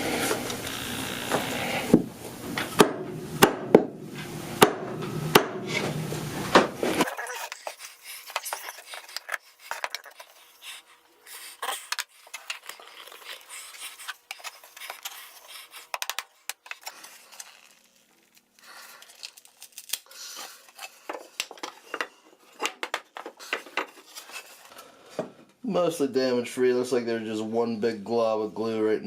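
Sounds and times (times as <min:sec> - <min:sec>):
chisel scraping on wood: 0:07.0 - 0:17.8.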